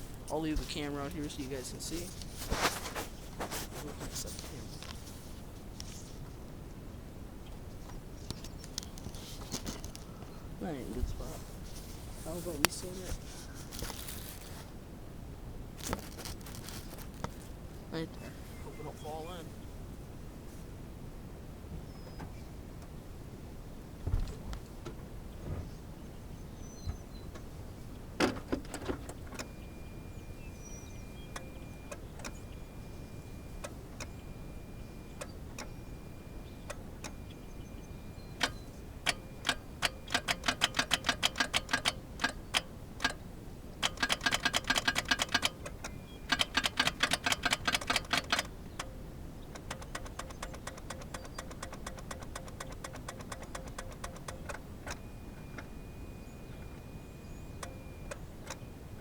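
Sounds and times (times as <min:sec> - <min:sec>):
starter solenoid rapid clicking: 0:27.3 - 0:59.0.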